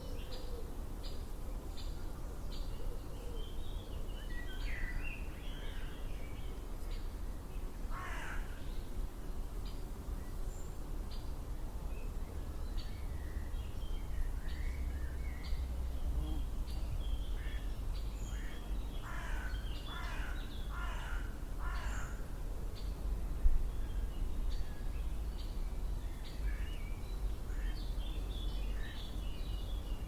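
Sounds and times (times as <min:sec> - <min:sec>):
crow cawing: 0:07.9 - 0:08.5, 0:19.0 - 0:22.2.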